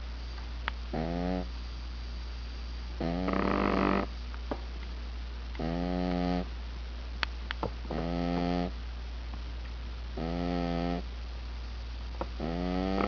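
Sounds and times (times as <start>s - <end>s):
cat snoring: 0.9s - 1.5s, 3.0s - 4.1s, 5.6s - 6.5s, 7.9s - 8.7s, 10.2s - 11.1s, 12.4s - 13.0s.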